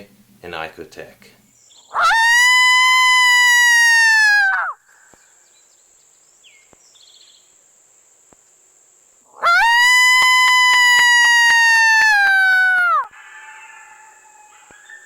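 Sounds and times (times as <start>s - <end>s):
faint bird chirp: 1.5s - 2.0s, 4.8s - 7.6s
coyote howls on predator call: 1.8s - 4.8s, 9.3s - 15.0s.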